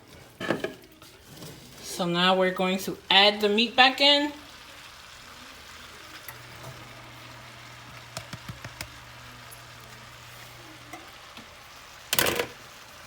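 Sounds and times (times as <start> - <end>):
food sizzling in a pan: 0.0 - 13.0.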